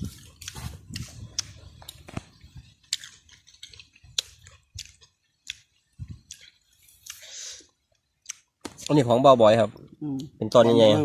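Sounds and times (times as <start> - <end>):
person chewing crunchy fruit: 0.0 - 9.0.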